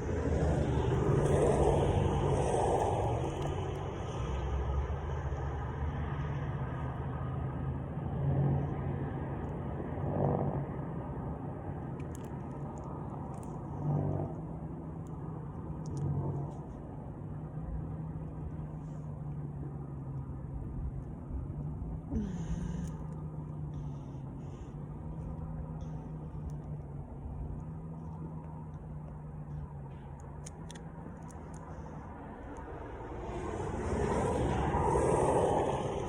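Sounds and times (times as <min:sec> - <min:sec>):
low rumble and hum: 0:00.0 - 0:36.0.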